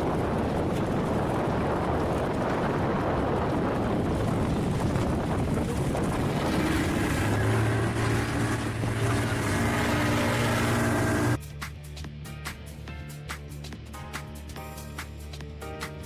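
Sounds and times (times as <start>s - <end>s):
boat engine hum: 0.0s - 11.4s
wind buffeting microphone: 0.0s - 11.4s.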